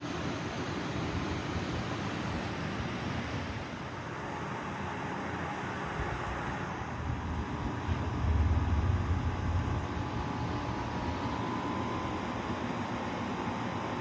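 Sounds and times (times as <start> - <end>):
ceiling fan air rush: 0.0 - 14.0
fan motor low rumble: 3.4 - 14.0.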